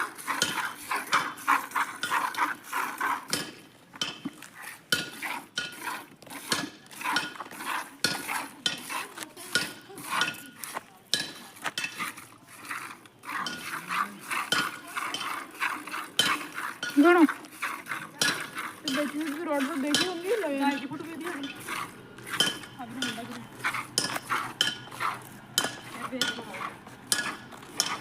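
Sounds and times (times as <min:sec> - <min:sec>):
milk squirting into a steel pail: 0:11.9 - 0:22.8.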